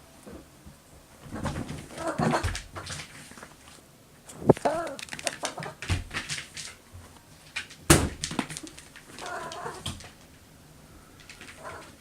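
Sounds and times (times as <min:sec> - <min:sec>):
cat meowing: 0:09.2 - 0:09.8.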